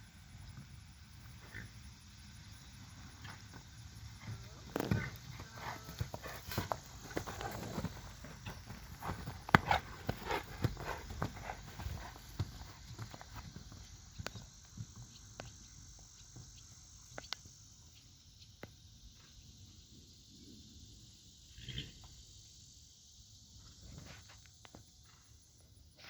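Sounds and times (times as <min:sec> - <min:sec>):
horse hoofbeats: 0:03.2 - 0:16.5.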